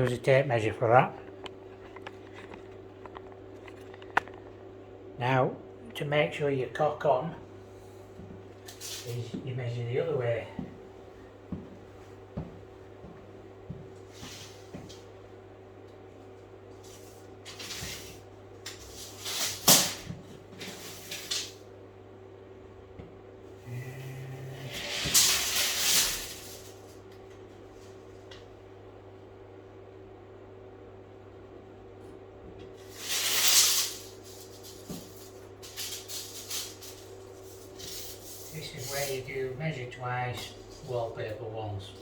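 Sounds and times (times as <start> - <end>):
faint steady hum: 0.0 - 42.0
scraping and knocking handling noises: 1.2 - 4.6
tape measure rattling swish: 33.0 - 34.7.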